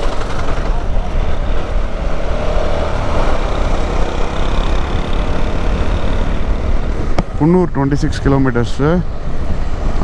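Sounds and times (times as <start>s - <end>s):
motorcycle engine running: 0.0s - 7.4s
road noise: 0.0s - 10.0s.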